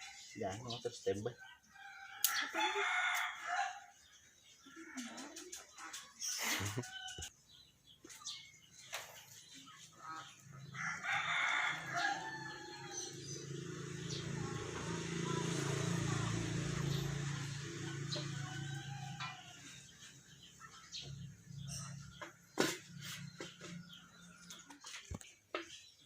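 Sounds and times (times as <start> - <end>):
rooster crowing: 1.7 - 3.9, 10.6 - 14.3, 16.9 - 20.4.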